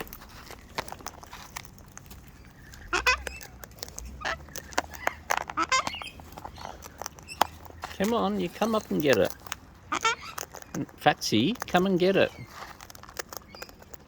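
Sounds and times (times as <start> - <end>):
cockatoos squawking: 2.5 - 10.7.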